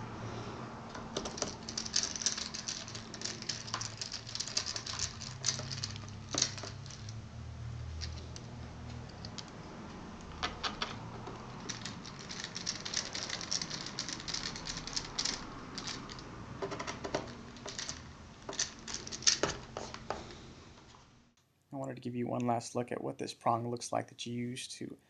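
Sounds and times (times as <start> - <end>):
steady background hiss: 0.0 - 25.0
small parts clicking and tapping: 0.9 - 7.2, 7.8 - 20.4.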